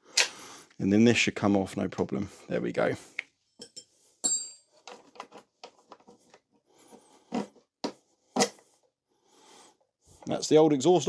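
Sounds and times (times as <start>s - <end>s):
metal clinks and knocks: 3.6s - 4.8s.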